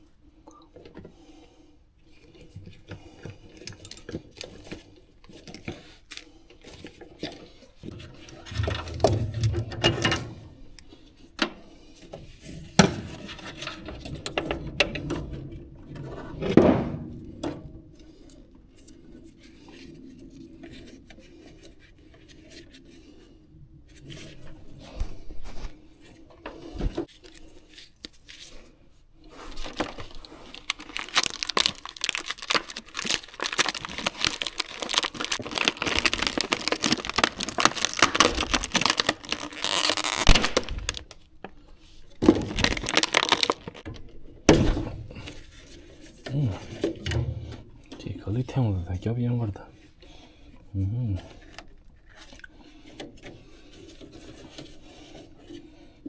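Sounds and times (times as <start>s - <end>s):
handling noises: 2.6s - 11.0s, 29.3s - 48.0s.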